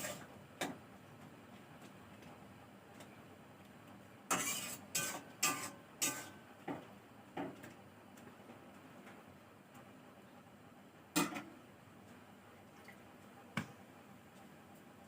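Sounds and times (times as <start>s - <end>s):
metal utensil scraping in a pot: 0.0s - 0.3s, 4.3s - 6.4s.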